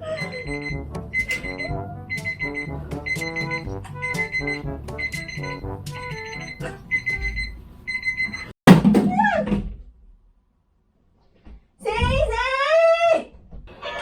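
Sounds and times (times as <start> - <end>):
alarm clock beeping: 0.2 - 8.5
electronic tune: 0.3 - 7.4
loud sudden knock: 8.7 - 9.8.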